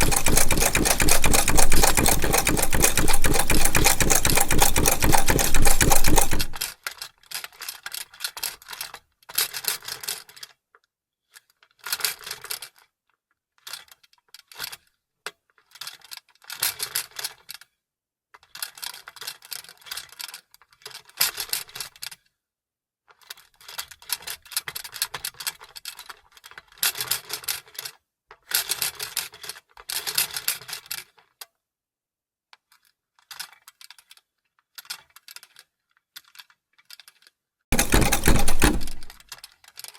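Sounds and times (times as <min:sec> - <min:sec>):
sewing machine running: 0:00.0 - 0:06.6, 0:37.7 - 0:39.2.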